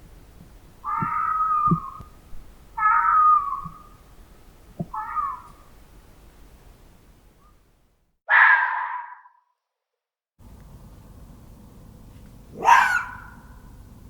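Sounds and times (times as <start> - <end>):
soft low knocks: 0.0 - 2.8, 3.5 - 5.7
fox calling: 0.8 - 4.1, 4.8 - 5.7, 8.3 - 9.4, 12.5 - 13.7.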